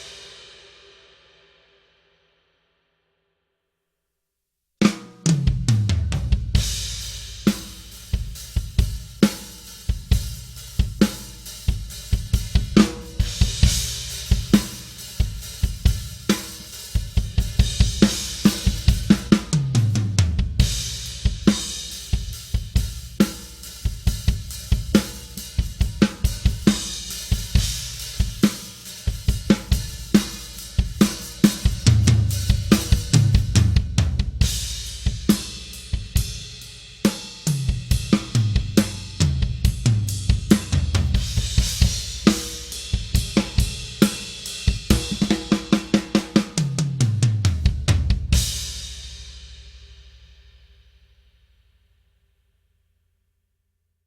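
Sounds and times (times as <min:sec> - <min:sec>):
drum kit groove: 0:00.0 - 0:01.0, 0:04.8 - 0:50.7
drum fills falling in pitch: 0:05.0 - 0:08.9, 0:29.3 - 0:36.2, 0:37.6 - 0:48.8.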